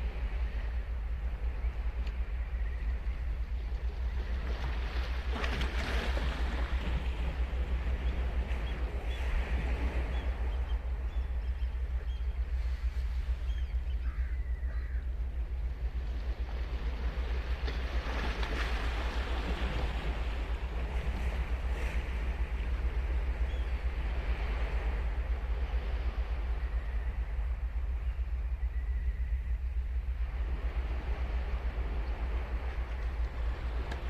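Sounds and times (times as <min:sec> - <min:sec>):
low surf rumble: 0:00.0 - 0:34.0
waves breaking and washing in: 0:00.0 - 0:34.0.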